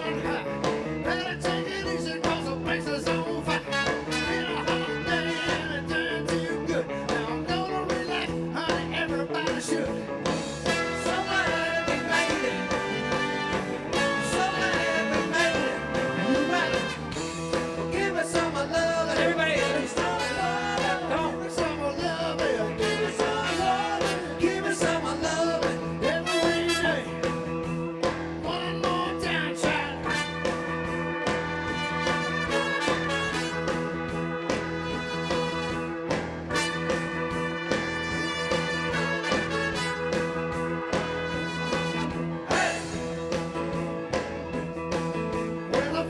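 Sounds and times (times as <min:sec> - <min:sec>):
person singing: 0:00.0 - 0:10.0, 0:10.7 - 0:27.2, 0:28.4 - 0:30.3, 0:42.5 - 0:43.2, 0:45.6 - 0:46.0
blues-rock band playing: 0:00.0 - 0:46.0.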